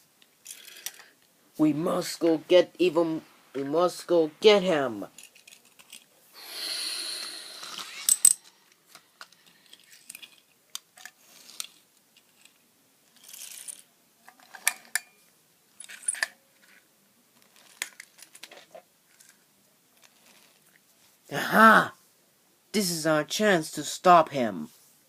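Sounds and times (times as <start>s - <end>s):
plastic toys scraping and clattering: 0.4s - 1.2s, 5.0s - 6.2s, 7.5s - 15.0s, 15.8s - 20.8s.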